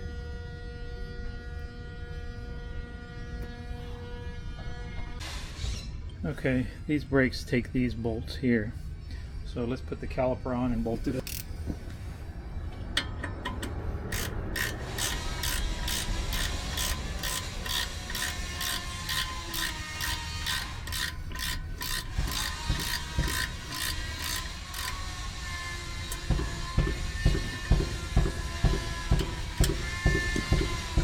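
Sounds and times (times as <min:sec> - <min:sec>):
ratchet wrench clicking: 0:11.2 - 0:11.6, 0:12.8 - 0:31.0.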